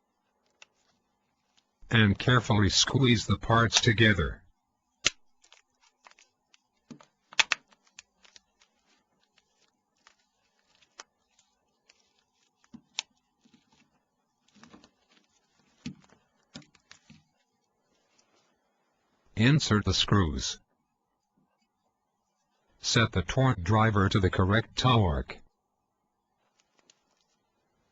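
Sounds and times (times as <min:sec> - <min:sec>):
plastic phone parts clicking: 0:06.9 - 0:08.4.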